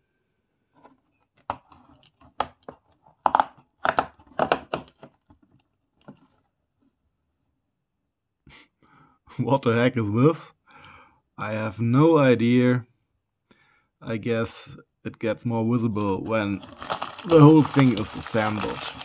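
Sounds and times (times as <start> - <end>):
cardboard and plastic bag crinkling: 16.3 - 19.0.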